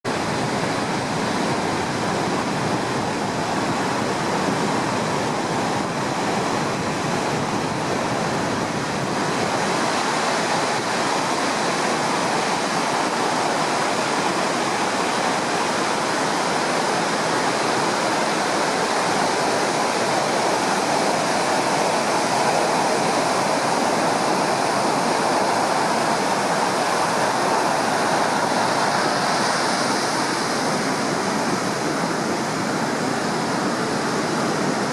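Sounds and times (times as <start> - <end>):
heavy surf breaking on shore: 0.0 - 34.9.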